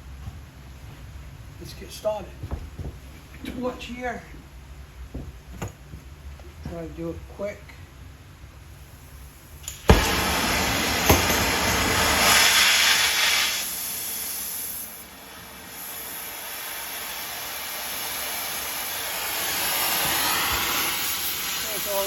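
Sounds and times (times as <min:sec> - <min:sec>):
gas torch hissing: 0:08.9 - 0:22.0
gas torch lighting pop: 0:09.6 - 0:15.0, 0:15.7 - 0:21.7.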